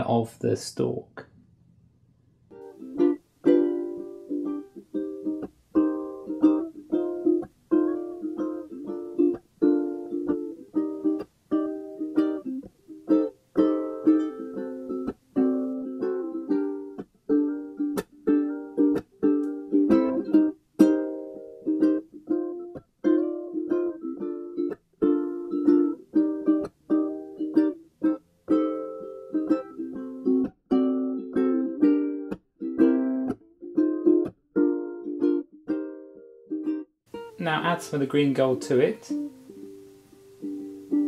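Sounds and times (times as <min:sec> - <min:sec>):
plucked-string tune: 0:02.5 - 0:41.0.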